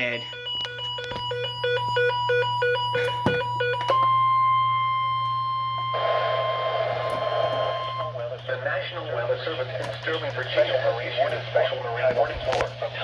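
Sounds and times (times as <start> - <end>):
alternating high and low beeps: 0.0 - 8.2
low electrical hum: 0.0 - 13.0.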